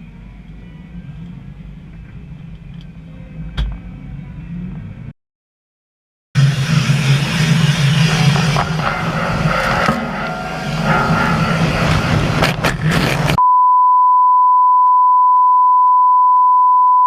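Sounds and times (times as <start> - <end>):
machinery engine drone and clatter: 0.0 - 5.1, 6.4 - 13.4
high-pitched beep tone: 13.4 - 17.0.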